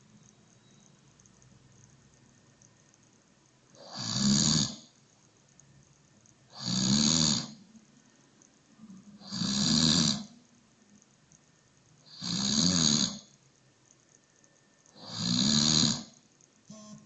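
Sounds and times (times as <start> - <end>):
person snoring: 3.8 - 4.9, 6.5 - 7.6, 9.2 - 10.3, 12.1 - 13.3, 15.0 - 16.2.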